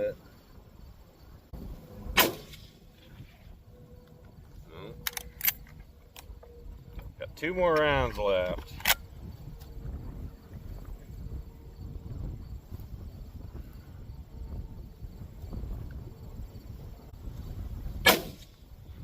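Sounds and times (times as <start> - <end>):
wind rumbling on microphone: 0.0 - 19.0
rifle shot with echo: 2.1 - 2.8, 18.0 - 18.5.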